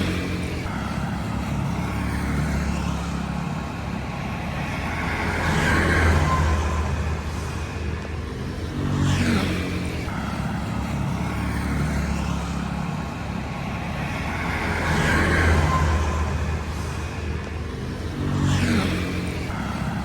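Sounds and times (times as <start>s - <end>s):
vehicle engines running: 0.0s - 20.0s
vehicles passing: 0.0s - 20.0s.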